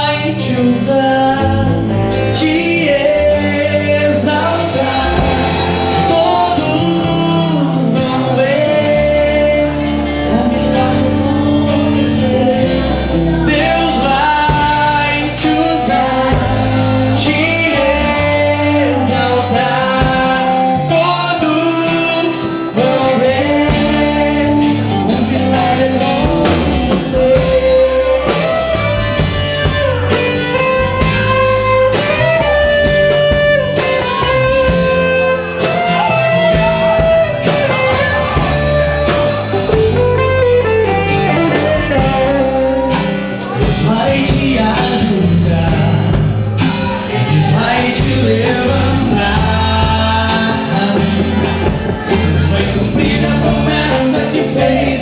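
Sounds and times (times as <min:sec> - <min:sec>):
bass line: 0:00.0 - 0:55.0
guitar: 0:00.0 - 0:55.0
person singing: 0:00.0 - 0:55.0.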